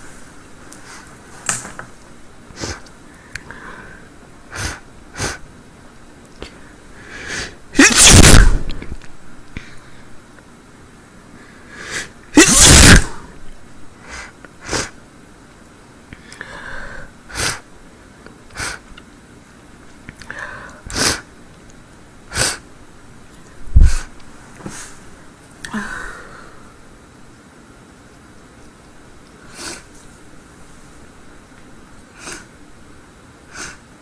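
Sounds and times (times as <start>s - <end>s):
woman sneezing: 7.8s - 8.8s, 12.4s - 13.3s.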